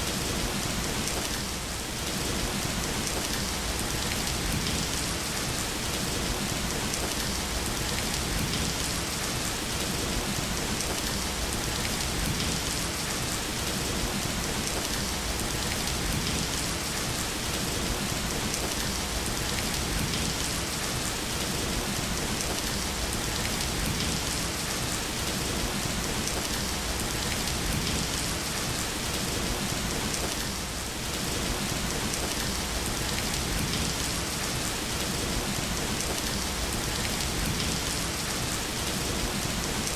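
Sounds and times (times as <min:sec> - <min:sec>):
steady rain hissing: 0:00.0 - 0:39.9.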